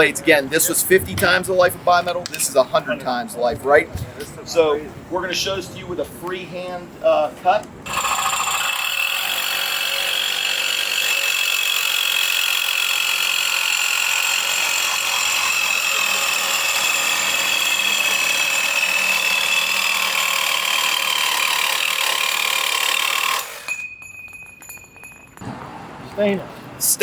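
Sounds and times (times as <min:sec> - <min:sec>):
reciprocating saw cutting: 0:07.9 - 0:23.8.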